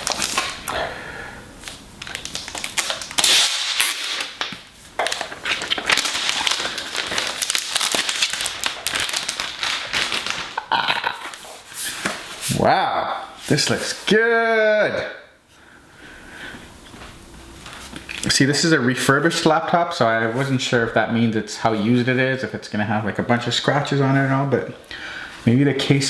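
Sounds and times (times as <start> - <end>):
packaging crackling rustle: 0.0 - 0.8, 1.6 - 12.4.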